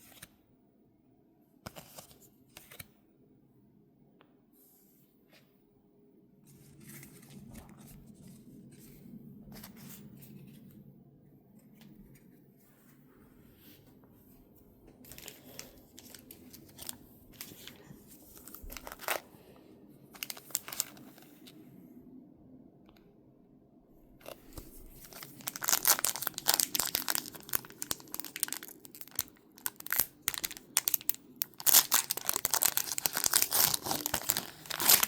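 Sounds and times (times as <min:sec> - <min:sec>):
packaging wrappers crinkling: 0:15.1 - 0:19.2, 0:20.2 - 0:21.3, 0:24.2 - 0:35.0.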